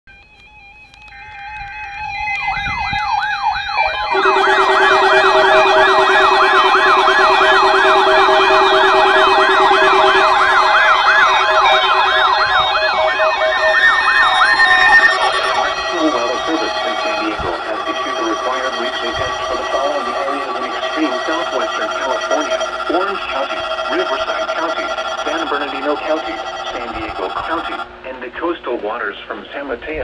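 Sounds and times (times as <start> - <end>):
warbling siren tones: 0.1 - 28.1
beeping alert tones: 4.0 - 27.9.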